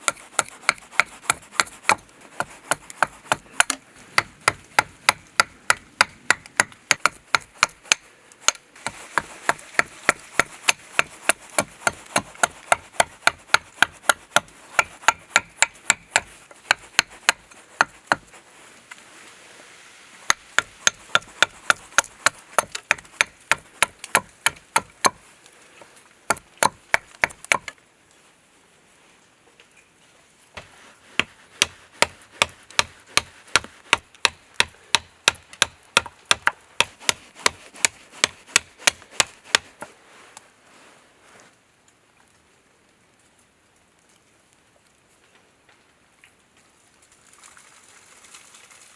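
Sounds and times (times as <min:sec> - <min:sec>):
edge tool chopping green wood: 0:00.0 - 0:18.4, 0:20.3 - 0:25.2, 0:26.3 - 0:27.8, 0:30.6 - 0:39.9.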